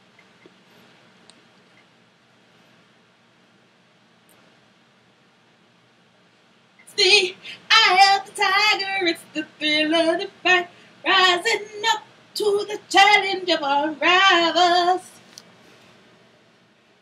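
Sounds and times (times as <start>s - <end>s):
woman singing unaccompanied: 6.8s - 15.2s.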